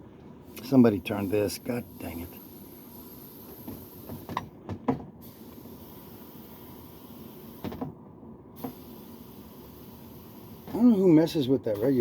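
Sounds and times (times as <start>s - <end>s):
faint steady hiss: 5.2s - 7.9s, 8.5s - 12.0s.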